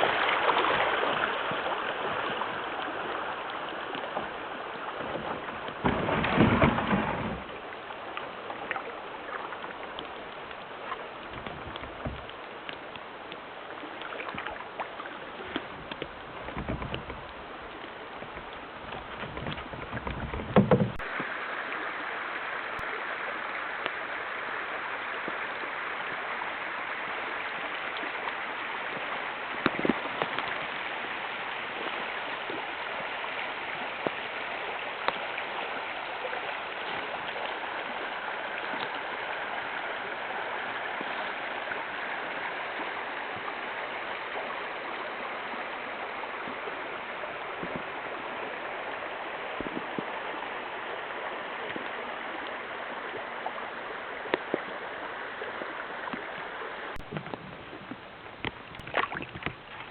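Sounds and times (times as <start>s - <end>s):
creek water rushing: 0.0s - 59.9s
thumps: 5.0s - 7.5s, 15.8s - 17.3s, 18.2s - 21.0s.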